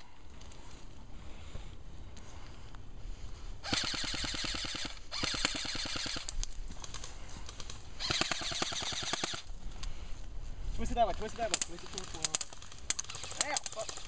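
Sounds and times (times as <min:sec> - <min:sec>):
airsoft gun firing bursts: 0:03.6 - 0:09.5, 0:11.5 - 0:14.0.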